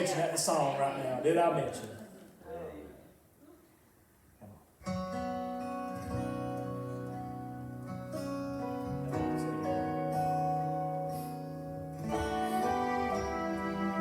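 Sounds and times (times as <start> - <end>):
sustained instrumental chords: 9.2 - 14.0.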